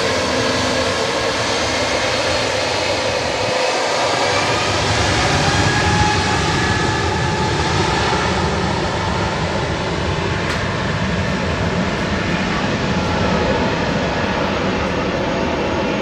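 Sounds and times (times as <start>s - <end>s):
jet engines roaring: 0.0s - 16.0s.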